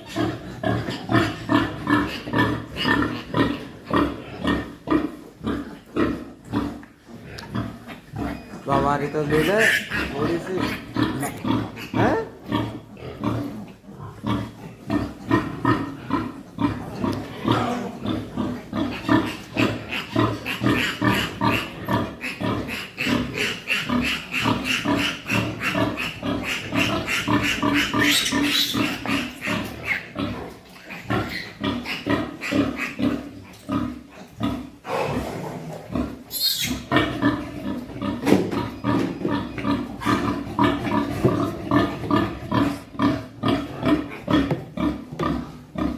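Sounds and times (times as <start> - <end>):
pigs grunting: 0.0 - 45.9
pig squealing: 7.6 - 13.5, 14.2 - 33.4, 34.5 - 44.5.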